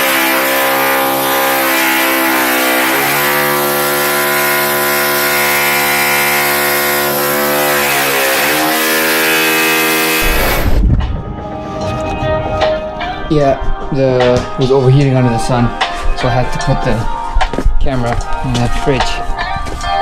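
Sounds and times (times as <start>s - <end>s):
abrasive saw cutting steel: 0.0s - 10.8s.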